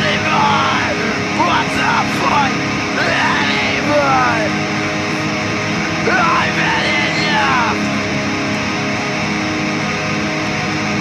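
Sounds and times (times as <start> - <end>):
heavy band music: 0.0 - 8.7
distorted electric guitar bends: 0.0 - 11.0.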